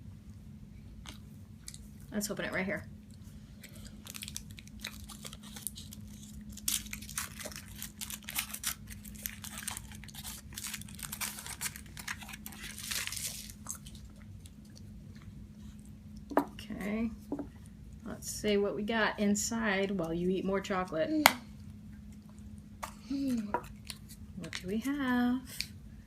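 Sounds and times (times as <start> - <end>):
foil wrapper crinkling and tearing: 3.6 - 14.6.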